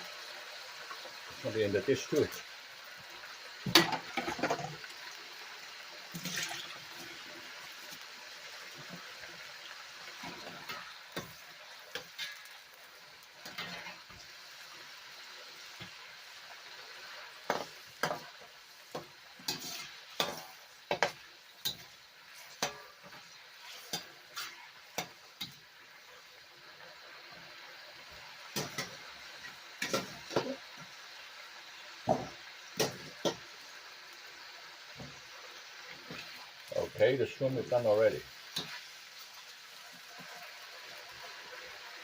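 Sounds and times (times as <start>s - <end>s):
cooking hiss: 0.0s - 42.0s.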